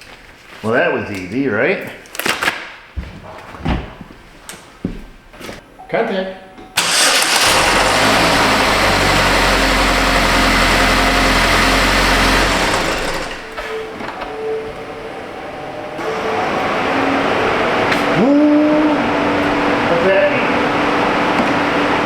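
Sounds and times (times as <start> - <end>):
car engine starting and idling: 6.8 - 14.3.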